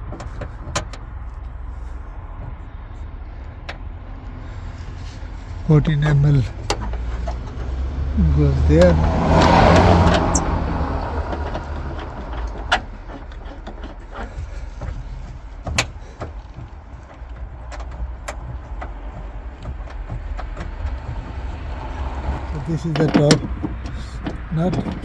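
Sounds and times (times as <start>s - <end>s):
steady low rumble: 1.0s - 25.0s
sharp metallic clicks and knocks: 5.8s - 25.0s.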